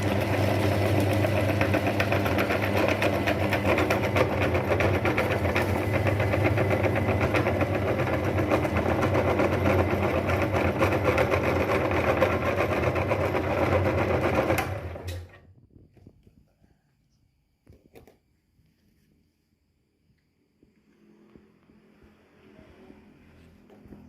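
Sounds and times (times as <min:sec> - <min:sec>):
meat grinder running: 0:00.0 - 0:15.3.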